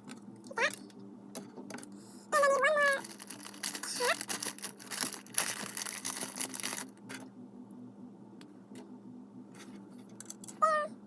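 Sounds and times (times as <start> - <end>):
plastic rustling with small clicks: 2.4 - 7.2.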